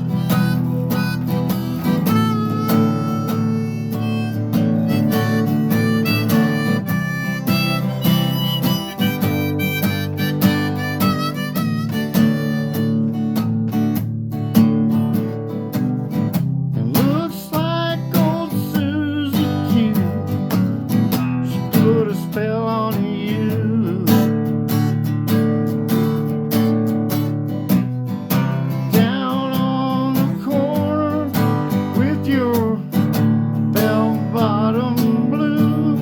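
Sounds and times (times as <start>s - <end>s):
harmonica melody: 0.0s - 13.9s, 28.4s - 36.0s
strummed acoustic guitar: 0.0s - 36.0s.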